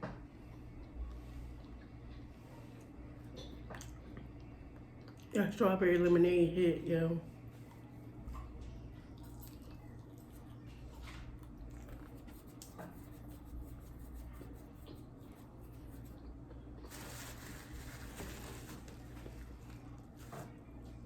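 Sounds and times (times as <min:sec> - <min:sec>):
low steady hum: 0:00.0 - 0:21.0
wet chewing: 0:09.1 - 0:13.8.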